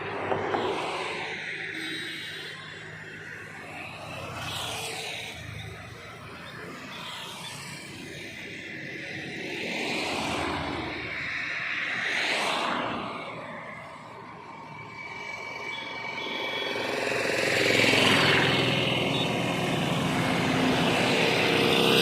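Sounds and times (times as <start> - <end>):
vehicles passing whooshes: 0.0 - 2.0, 2.6 - 22.0
road traffic rushing: 0.0 - 22.0.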